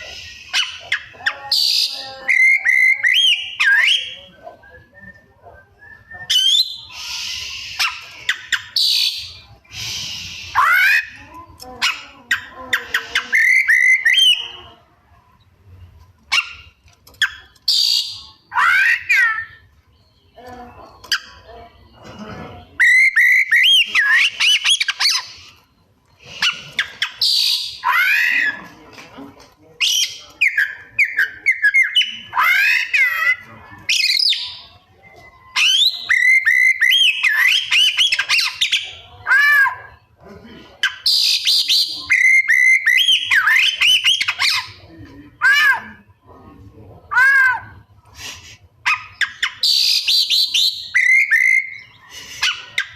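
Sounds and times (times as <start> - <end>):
bird singing whistles and warbles: 0.0 - 11.2, 22.8 - 28.6, 29.8 - 39.0, 40.8 - 44.9, 48.9 - 52.9
mimicked bird calls: 0.0 - 28.9, 29.8 - 52.9.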